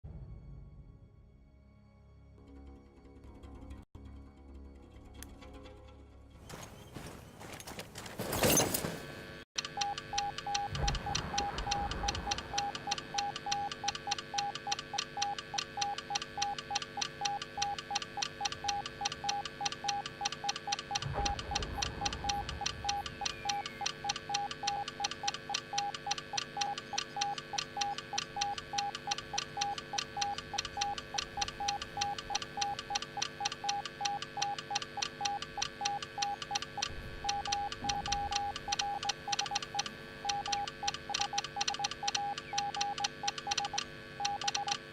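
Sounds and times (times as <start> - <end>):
morse code beeps: 9.6 - 44.9.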